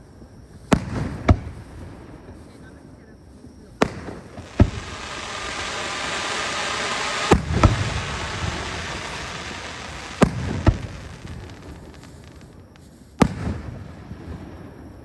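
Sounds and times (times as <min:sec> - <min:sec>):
fireworks hissing: 0:03.8 - 0:13.9
firework bangs: 0:03.8 - 0:14.6.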